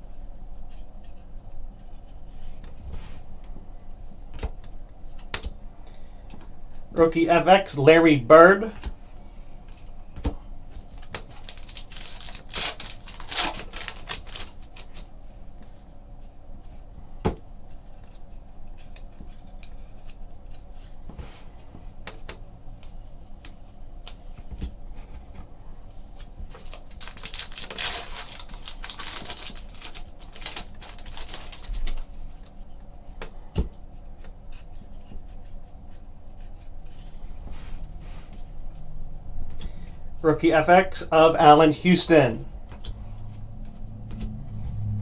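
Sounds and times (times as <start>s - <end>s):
cards rustling: 10.8s - 15.1s, 26.4s - 32.3s.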